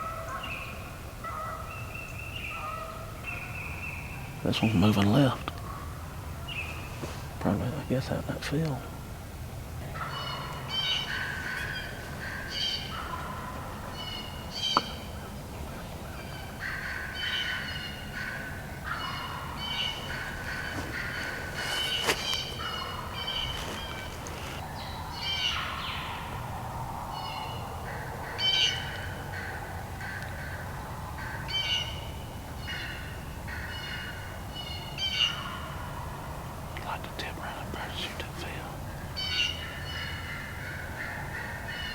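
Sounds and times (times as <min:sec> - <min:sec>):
turkeys gobbling: 0:01.2 - 0:01.8, 0:02.4 - 0:03.2, 0:09.7 - 0:24.6, 0:35.0 - 0:41.9.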